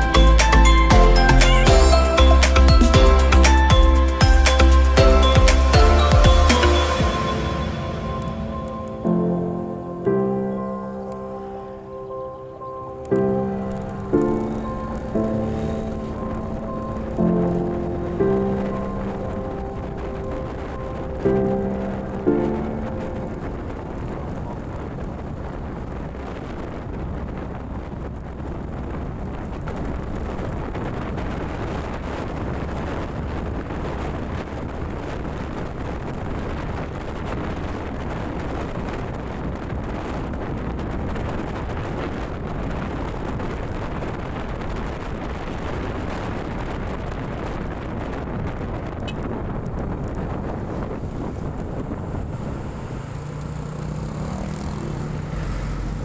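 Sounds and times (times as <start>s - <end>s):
vehicle running along road: 0.0s - 56.0s
wind rumble on microphone: 12.4s - 56.0s.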